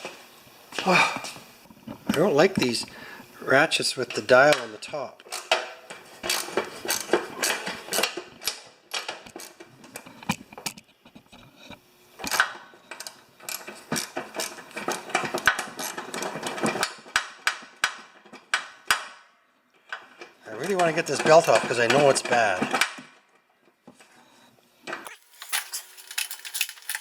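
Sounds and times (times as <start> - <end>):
metal tools clacking on frame: 25.1 - 27.0.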